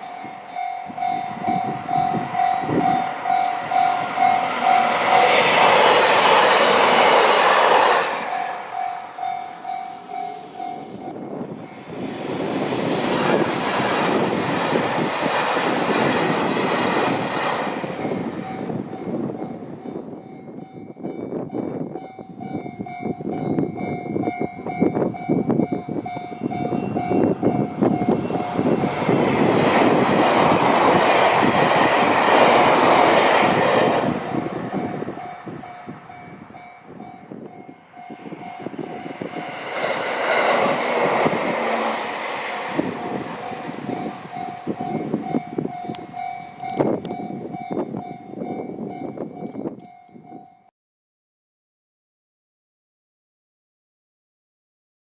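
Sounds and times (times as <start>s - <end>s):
crossing warning bell ringing: 0.0s - 12.4s, 15.8s - 50.7s
train rushing past: 0.0s - 49.8s.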